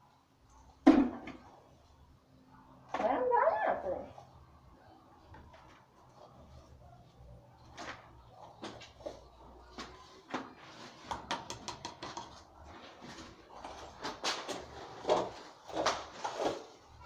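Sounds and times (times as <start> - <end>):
objects knocking and clattering: 0.8 - 1.5, 7.7 - 16.7.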